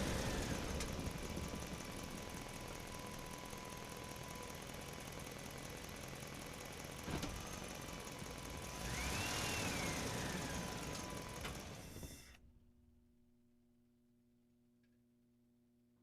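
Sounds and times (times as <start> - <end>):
engine running: 0.0 - 12.4.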